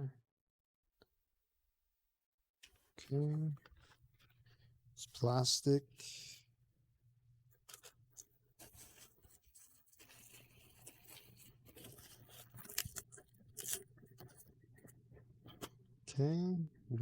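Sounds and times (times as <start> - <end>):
plastic packaging rustling: 8.7 - 14.4.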